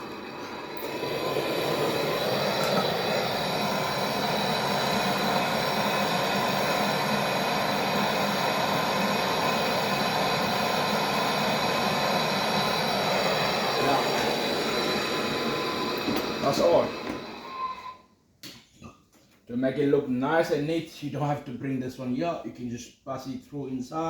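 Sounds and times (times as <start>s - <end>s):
brazing torch flame hissing: 0.0s - 17.9s.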